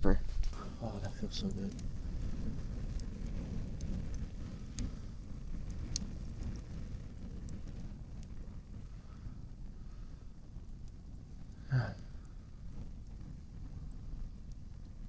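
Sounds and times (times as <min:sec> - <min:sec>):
steady low rumble: 0:00.0 - 0:09.1
campfire crackling and popping: 0:00.0 - 0:15.0.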